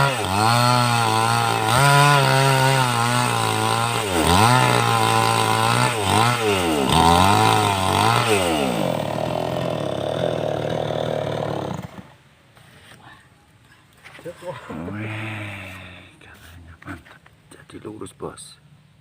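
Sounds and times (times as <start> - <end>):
chainsaw revving and idling: 0.0 - 12.2.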